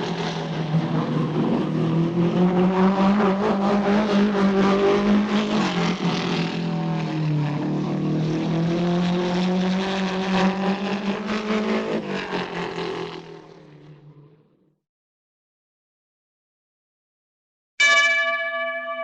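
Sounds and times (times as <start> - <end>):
engine running: 0.0 - 14.4.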